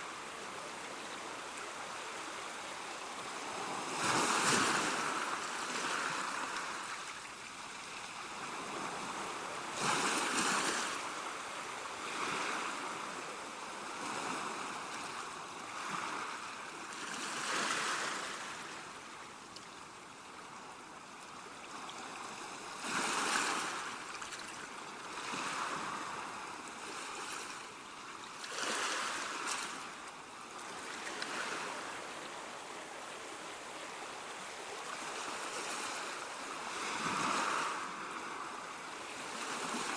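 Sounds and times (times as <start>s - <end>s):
ocean waves washing in: 25.0s - 39.9s.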